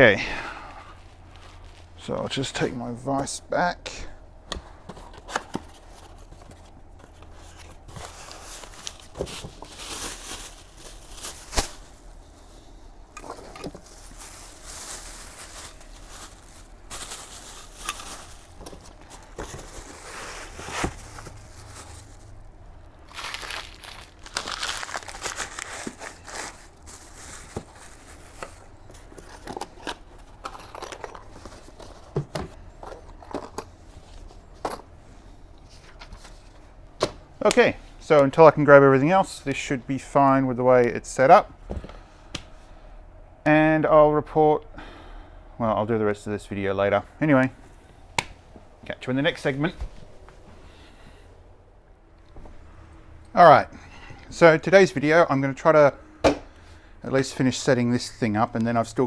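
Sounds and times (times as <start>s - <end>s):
cardboard and wrapping crinkling: 1.0s - 3.2s, 4.7s - 34.8s.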